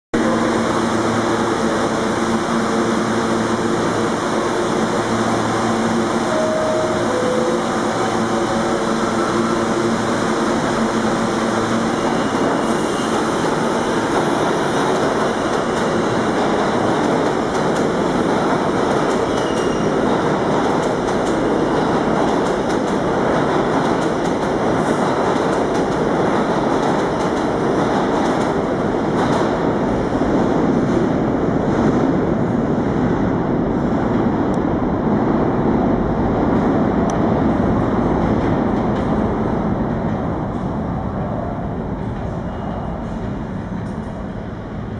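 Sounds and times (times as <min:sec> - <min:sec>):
train humming tones: 0:00.2 - 0:29.1
train wheel and rail rumble: 0:00.2 - 0:44.9.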